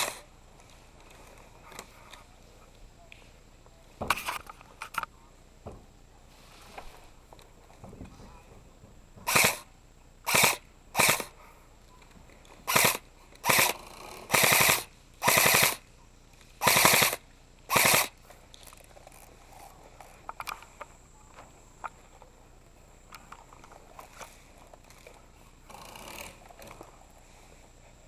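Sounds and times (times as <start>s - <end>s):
airsoft rifle full-auto bursts: 0.0s - 0.2s, 9.3s - 11.3s, 12.6s - 15.8s, 16.6s - 18.2s.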